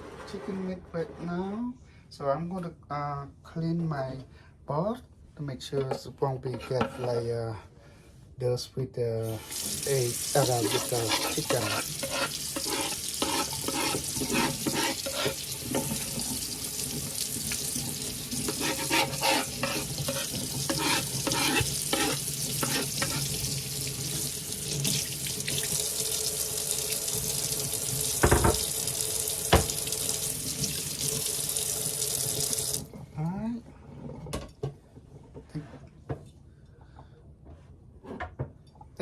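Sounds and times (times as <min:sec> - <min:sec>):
tap running into a sink: 0:28.1 - 0:31.3
pot knocking and clattering: 0:28.2 - 0:28.7.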